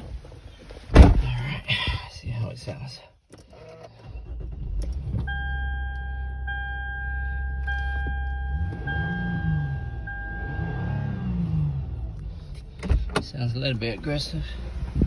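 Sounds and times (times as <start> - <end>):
car engine idling and revving: 2.6 - 15.0
dashboard warning chime: 5.3 - 10.9.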